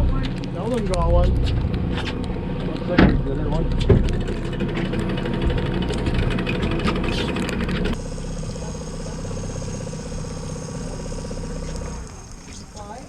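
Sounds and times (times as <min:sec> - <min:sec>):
boat engine idling: 0:00.0 - 0:13.0
clatters and knocks: 0:00.1 - 0:08.0.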